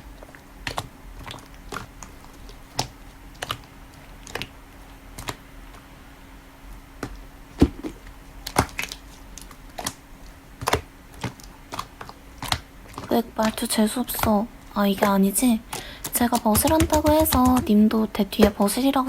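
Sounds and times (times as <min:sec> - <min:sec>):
faint steady hum: 0:00.0 - 0:19.0
sharp clicks and taps: 0:10.6 - 0:18.8.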